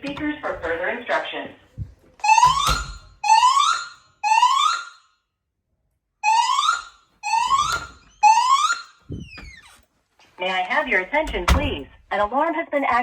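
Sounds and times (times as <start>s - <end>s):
fire alarm whoop tone: 2.2s - 5.1s, 6.2s - 9.3s.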